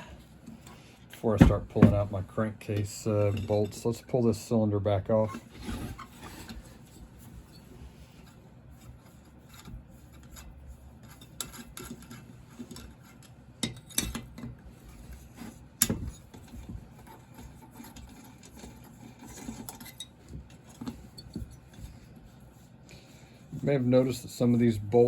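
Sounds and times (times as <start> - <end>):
metal tools clinking and rubbing: 2.9 - 4.0, 15.0 - 21.9.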